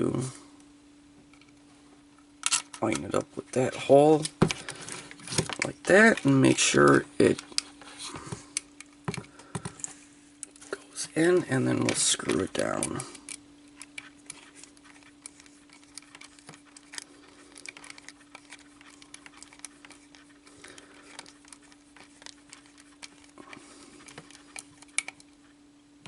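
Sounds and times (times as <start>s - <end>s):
steady low hum: 0.0s - 26.0s
screwdriver clicks and ticks: 24.0s - 25.3s.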